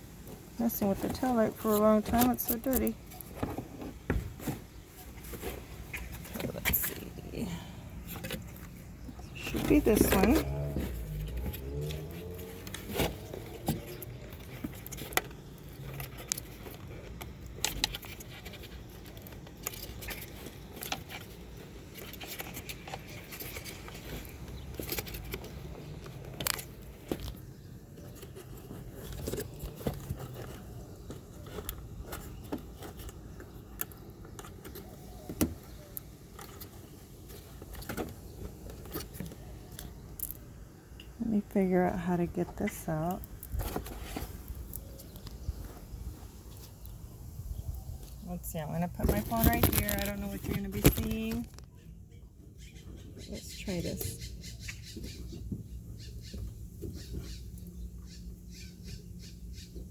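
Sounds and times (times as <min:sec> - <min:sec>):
small clicks taps and scrapes: 0:00.8 - 0:04.2, 0:08.1 - 0:27.4, 0:49.0 - 0:51.7.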